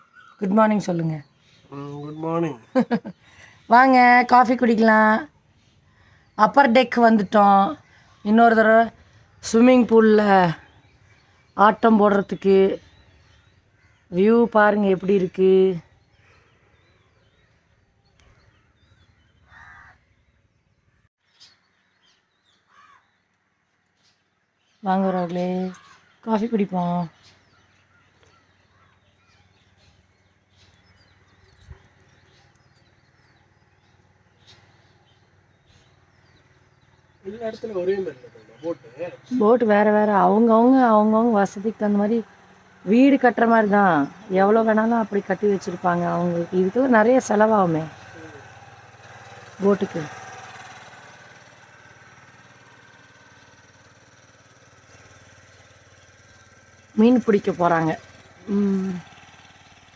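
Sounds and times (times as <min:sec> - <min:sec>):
faint birds chirping: 0:00.0 - 0:59.9
boat motor throbbing: 0:28.5 - 0:59.9.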